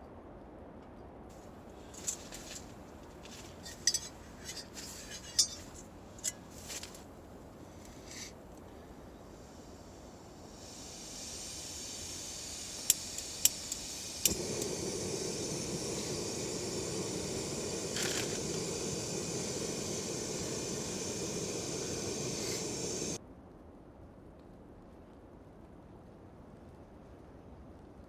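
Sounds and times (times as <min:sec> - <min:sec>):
gas burner hissing: 0:01.3 - 0:23.2
gas hissing: 0:01.4 - 0:23.2
igniter clicks: 0:01.8 - 0:07.0, 0:07.8 - 0:23.2.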